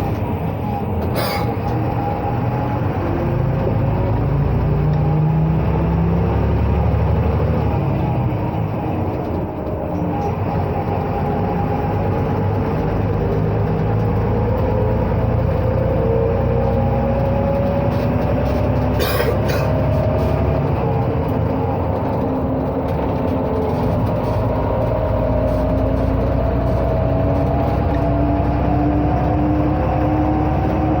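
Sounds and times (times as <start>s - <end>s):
bus diesel engine with whine: 0.0s - 31.0s.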